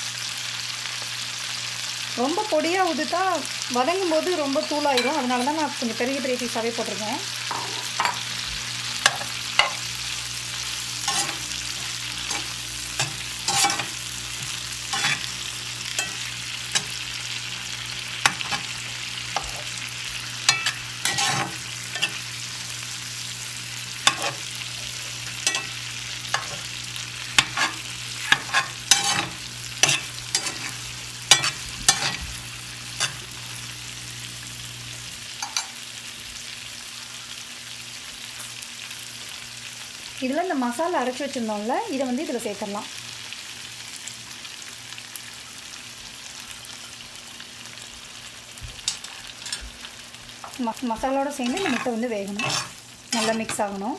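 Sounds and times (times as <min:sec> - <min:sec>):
food sizzling in a frying pan: 0:00.0 - 0:53.9
spatula scraping and knocking pan: 0:07.5 - 0:10.0, 0:10.8 - 0:17.2, 0:18.2 - 0:22.4, 0:24.0 - 0:26.7, 0:27.3 - 0:33.3, 0:48.7 - 0:53.6.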